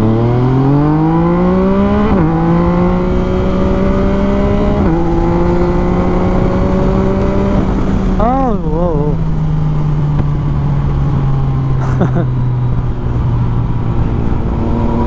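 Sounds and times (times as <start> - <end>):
motorcycle engine accelerating: 0.0 - 15.0.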